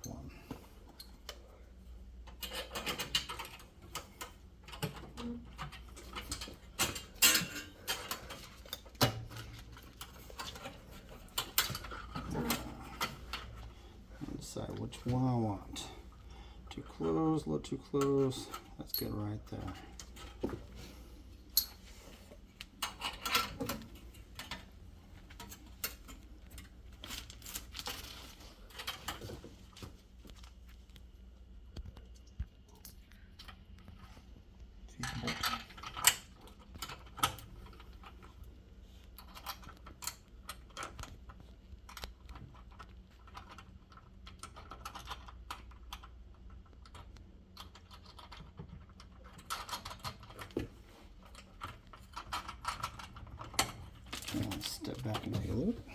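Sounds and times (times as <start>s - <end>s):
metal hardware clicking and rattling: 2.2s - 13.7s, 17.9s - 20.6s, 22.6s - 29.4s, 34.9s - 38.4s, 39.1s - 50.6s, 51.2s - 55.9s.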